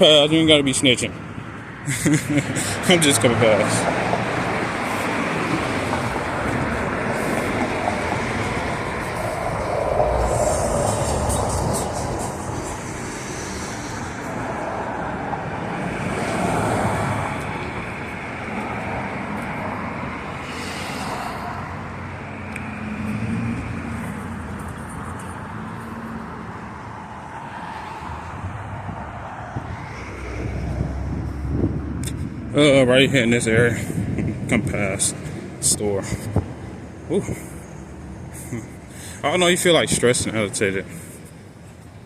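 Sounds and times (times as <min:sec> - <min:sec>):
road noise: 0:00.0 - 0:42.0
vehicles passing by: 0:00.0 - 0:42.0.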